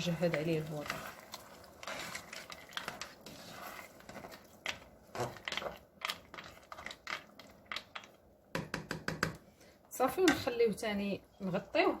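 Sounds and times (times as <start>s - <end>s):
utensil scraping cooking pot: 0.0s - 8.2s.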